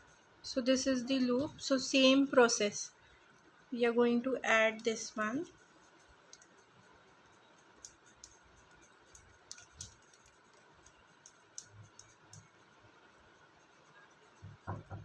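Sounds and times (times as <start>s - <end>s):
beads clicking and tapping: 4.8s - 15.0s.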